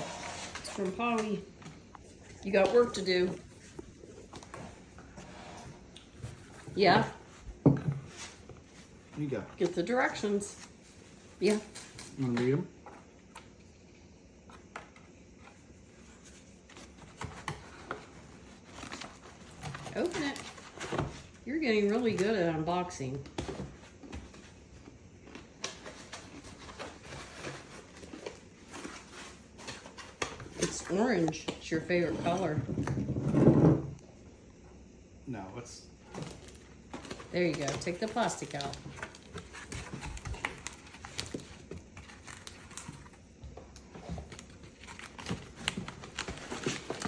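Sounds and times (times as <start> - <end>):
box packaging rustling: 16.0 - 22.3, 25.2 - 32.5, 36.1 - 47.0
plastic packaging crinkling: 36.2 - 43.2.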